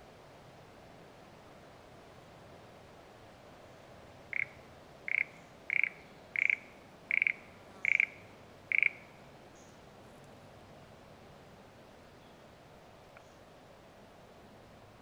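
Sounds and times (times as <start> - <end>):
frog croaking: 4.3 - 9.2.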